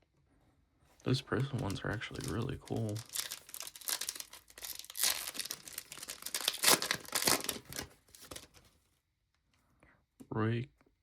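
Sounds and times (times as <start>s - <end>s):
card pack wrapper tearing: 1.4s - 8.6s.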